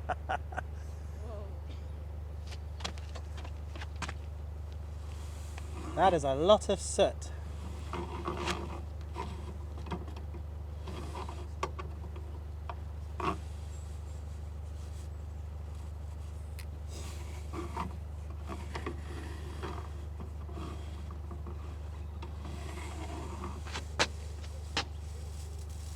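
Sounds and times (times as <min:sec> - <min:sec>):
steady low hum: 0:00.0 - 0:25.9
brush scraping flue: 0:22.4 - 0:25.9.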